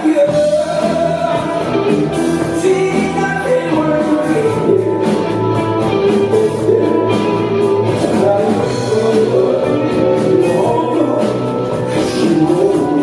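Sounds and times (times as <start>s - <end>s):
live rock band playing: 0.0s - 13.0s.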